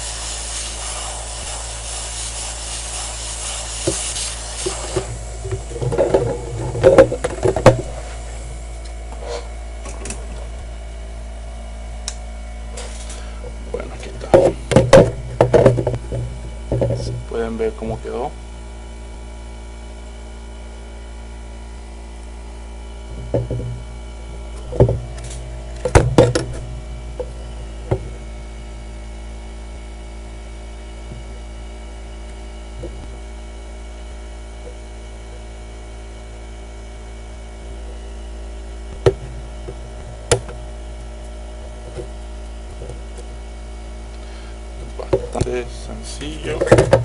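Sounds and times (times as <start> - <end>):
electrical hum: 0.0 - 47.0
knocks and clicks on a workbench: 5.5 - 7.9, 14.3 - 17.2, 23.2 - 23.8, 25.8 - 26.6, 27.9 - 28.1, 46.6 - 47.0.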